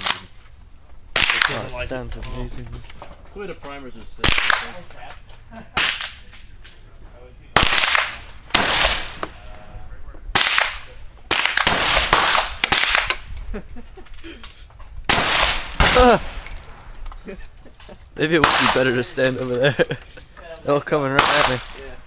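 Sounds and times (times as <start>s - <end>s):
rifle shots echoing: 1.1s - 1.7s, 4.2s - 4.8s, 5.8s - 6.2s, 7.6s - 9.4s, 10.3s - 13.2s, 15.1s - 16.9s, 18.4s - 19.2s, 21.1s - 22.0s.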